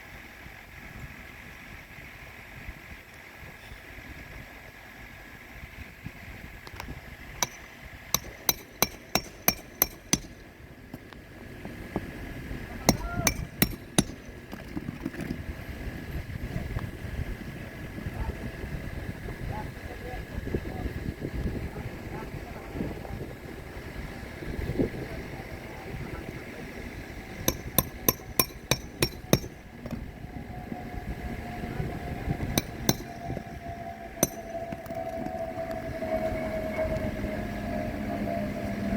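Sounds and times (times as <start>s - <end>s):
hammer driving nails into shingles: 7.4s - 10.5s, 12.8s - 15.4s, 27.4s - 30.0s, 32.4s - 33.6s, 34.2s - 34.9s.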